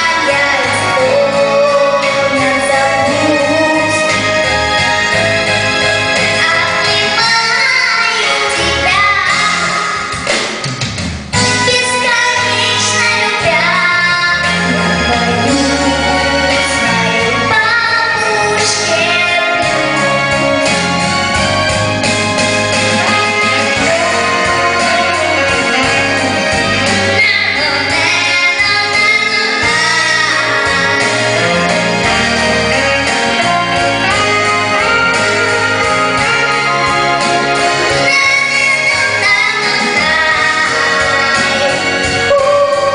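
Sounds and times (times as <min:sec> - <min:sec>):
woman singing: 0:00.0 - 0:04.2, 0:11.5 - 0:20.1, 0:23.0 - 0:26.0, 0:27.2 - 0:31.8, 0:37.9 - 0:42.9
musical accompaniment: 0:00.0 - 0:42.9.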